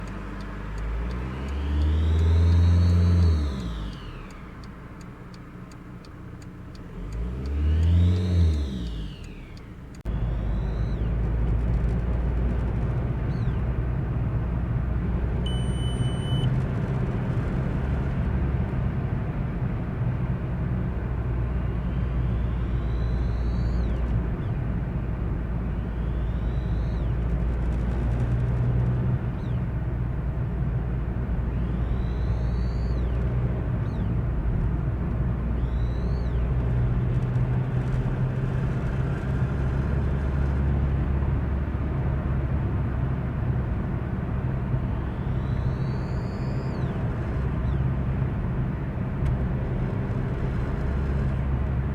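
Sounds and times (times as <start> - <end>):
diesel engine rumbling: 0.0 - 51.9
turbo whistle rising: 22.2 - 24.0, 31.5 - 33.3, 45.0 - 47.1.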